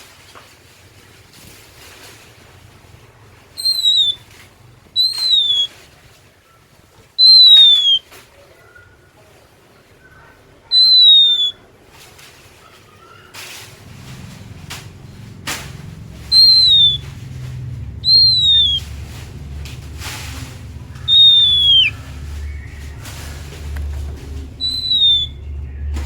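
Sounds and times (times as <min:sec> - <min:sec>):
bird whistled song notes: 0:03.6 - 0:04.2, 0:05.0 - 0:05.7, 0:07.2 - 0:08.0, 0:10.7 - 0:11.6, 0:14.5 - 0:26.0
soft low bird notes: 0:03.6 - 0:04.3, 0:04.9 - 0:05.7, 0:13.7 - 0:26.0.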